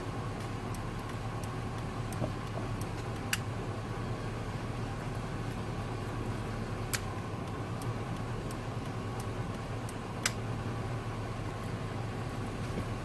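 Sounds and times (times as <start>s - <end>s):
truck engine idling: 0.0s - 13.0s.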